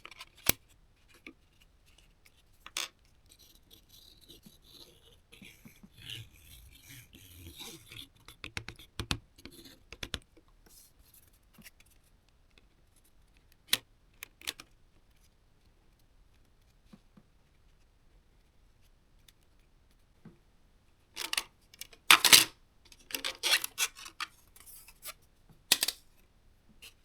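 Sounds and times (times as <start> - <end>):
plastic pieces rubbing and scraping: 2.7 - 8.4, 23.1 - 24.9.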